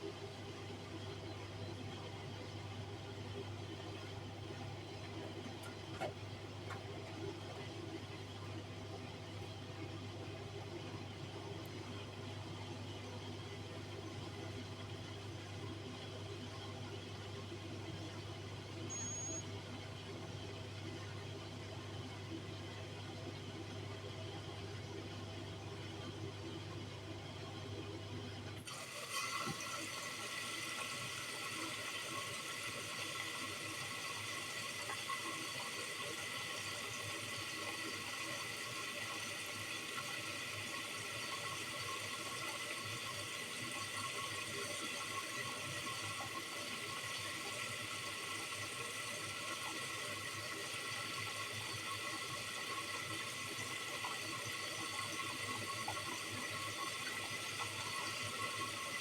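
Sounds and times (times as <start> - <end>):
drain pump low hum: 0.0 - 16.8, 28.5 - 59.0
water rushing into washing machine: 28.6 - 59.0.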